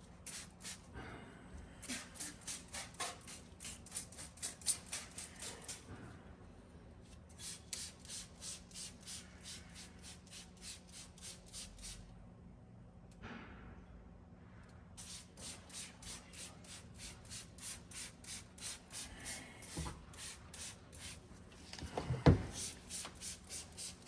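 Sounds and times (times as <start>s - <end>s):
spray bottle hissing sprays: 1.8s - 5.8s, 22.5s - 24.0s.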